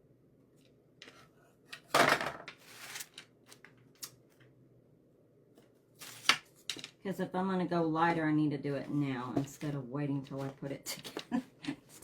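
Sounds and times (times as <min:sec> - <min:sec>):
craft supplies rustling clatter: 0:08.8 - 0:12.0.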